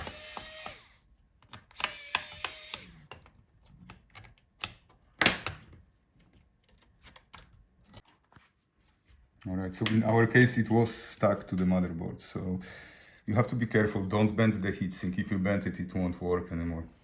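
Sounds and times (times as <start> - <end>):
screwdriver clicks and taps: 0.0 - 0.8, 1.4 - 5.4.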